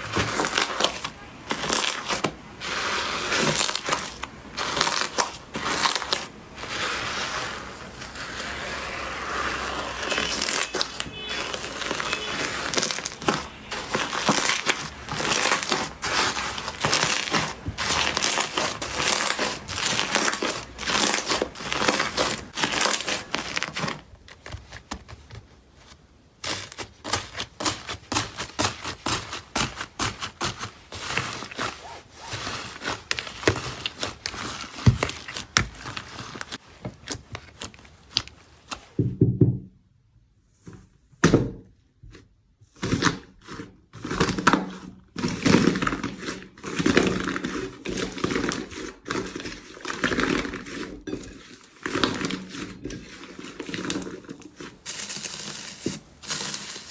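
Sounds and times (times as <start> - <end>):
slime crackling and popping: 9.8 - 24.8.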